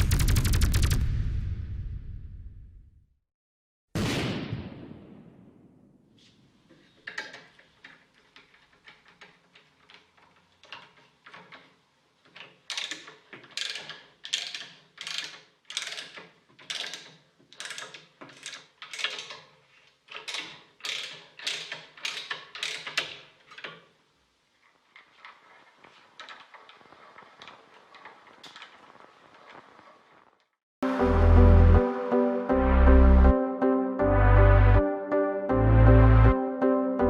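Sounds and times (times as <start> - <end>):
hand tool ratcheting: 7.0 - 23.8.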